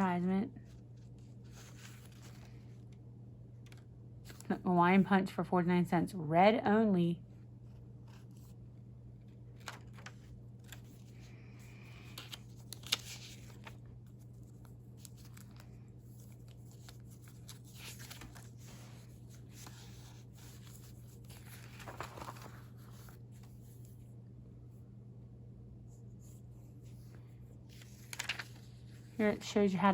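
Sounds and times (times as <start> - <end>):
paper pages rustling: 0.6 - 3.0, 7.6 - 8.6, 9.2 - 24.1, 26.1 - 29.4.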